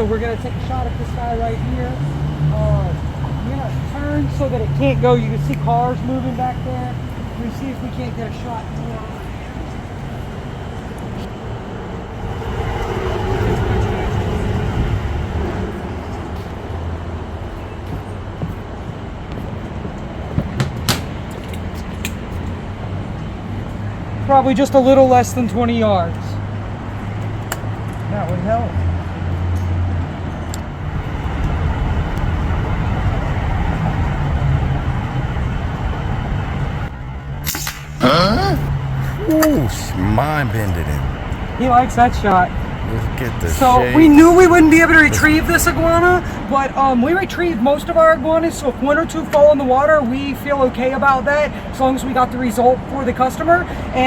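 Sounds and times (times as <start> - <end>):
road traffic rumble: 0.0 - 54.0
vehicle passing: 11.3 - 17.7, 26.3 - 46.6.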